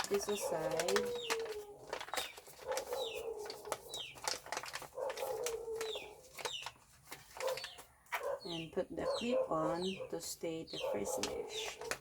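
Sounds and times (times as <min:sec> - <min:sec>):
handling clicks and rustles: 0:00.0 - 0:08.4.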